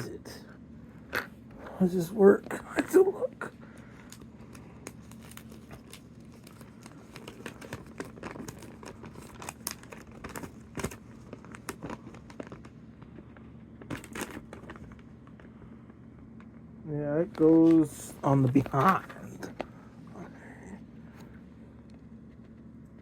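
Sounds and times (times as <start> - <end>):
packaging crinkling and rustling: 2.4 - 15.6, 17.3 - 20.6.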